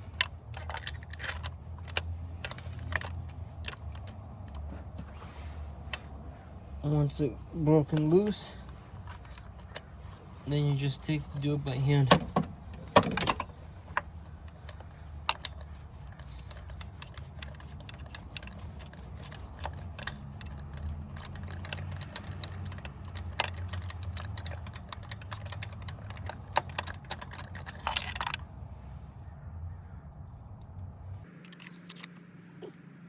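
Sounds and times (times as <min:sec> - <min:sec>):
scraping rustle: 0:00.0 - 0:29.0
socket wrench clicking: 0:12.2 - 0:28.4.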